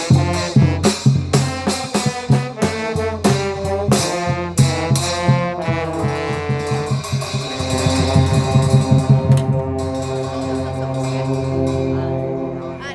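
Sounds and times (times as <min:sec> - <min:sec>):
brass band with trombones playing: 0:00.0 - 0:12.9
low bass line: 0:07.4 - 0:12.9.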